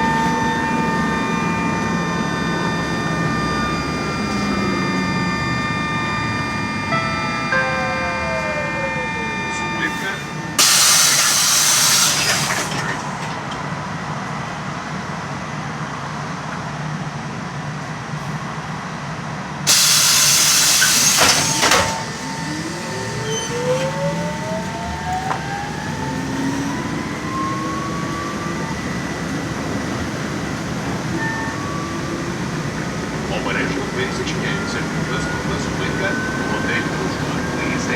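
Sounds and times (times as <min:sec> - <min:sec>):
electric motor whine rising: 0:00.0 - 0:12.9, 0:19.7 - 0:30.0
pneumatic hiss: 0:09.9 - 0:13.1, 0:19.7 - 0:26.4.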